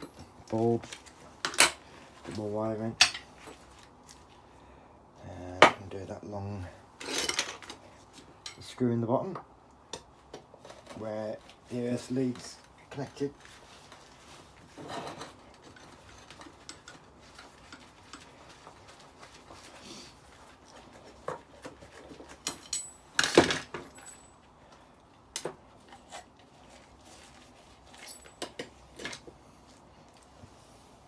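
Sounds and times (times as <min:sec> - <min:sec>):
small metal parts clinking: 0:07.0 - 0:08.6, 0:22.2 - 0:24.5.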